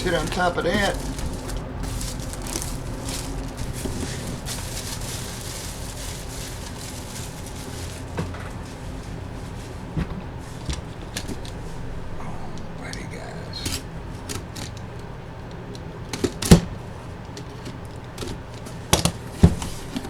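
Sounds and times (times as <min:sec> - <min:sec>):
cardboard scraping and rustling: 0:00.0 - 0:12.0
low steady hum: 0:00.0 - 0:20.0.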